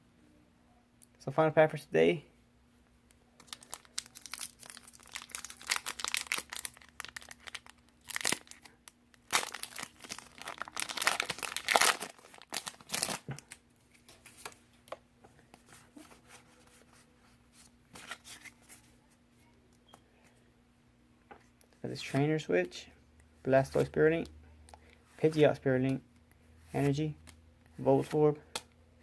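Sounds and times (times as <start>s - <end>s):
foil wrapper tearing and crinkling: 3.4s - 13.5s
cards rustling: 9.3s - 19.0s.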